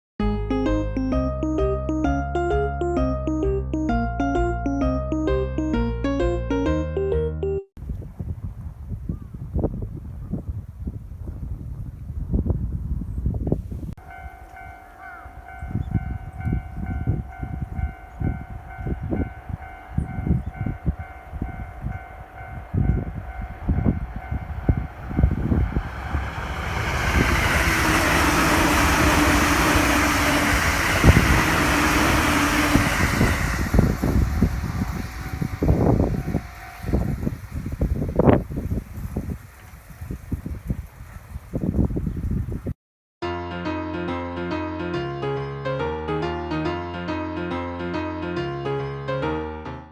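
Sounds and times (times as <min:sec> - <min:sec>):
wind on microphone: 0:07.8 - 0:42.8
level crossing warning bell: 0:14.0 - 0:37.0
train wheels rushing on rails: 0:14.0 - 0:38.4.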